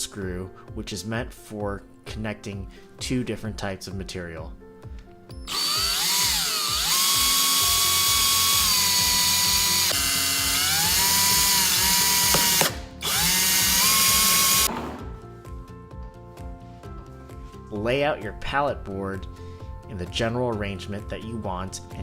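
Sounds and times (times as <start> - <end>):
power drill driving screws: 5.5 - 15.0.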